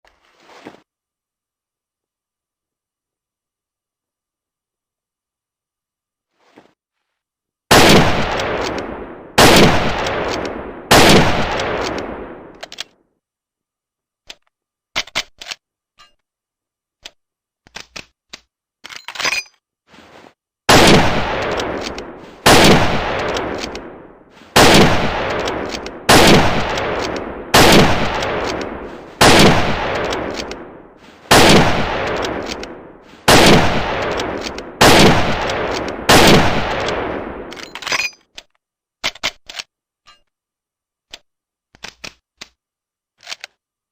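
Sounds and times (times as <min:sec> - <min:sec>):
rifle shots echoing: 0:07.7 - 0:12.6, 0:20.7 - 0:37.6
rifle bolt metallic clicks: 0:11.6 - 0:12.9, 0:36.8 - 0:39.7, 0:43.2 - 0:43.6.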